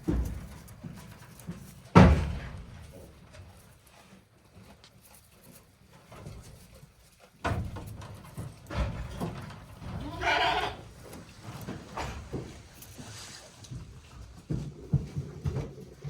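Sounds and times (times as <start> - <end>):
goat kid bleating: 9.9 - 10.9
knocking and rustling: 11.0 - 16.0.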